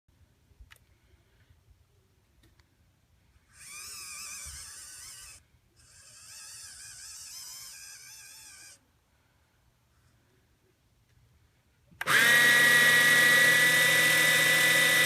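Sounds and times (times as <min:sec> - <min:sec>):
small electric motor whining: 0:03.5 - 0:08.8, 0:12.0 - 0:15.0.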